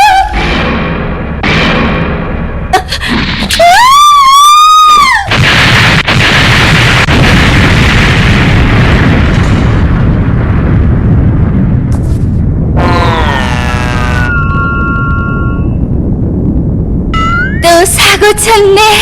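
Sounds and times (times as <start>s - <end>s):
loud rumbling explosion: 0.0s - 3.6s, 5.0s - 19.0s.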